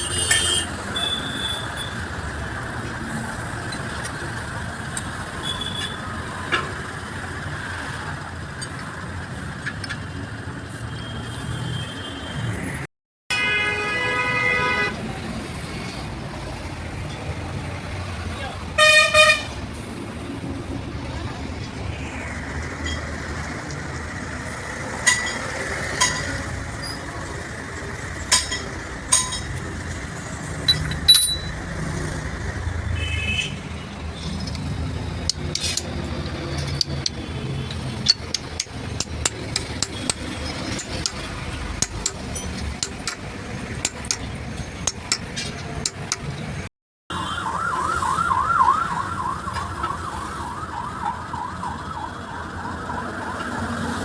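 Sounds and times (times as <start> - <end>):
traffic noise: 0.0 - 54.0
steel tools clinking: 30.6 - 31.6, 41.8 - 46.1
wavering siren: 47.1 - 54.0.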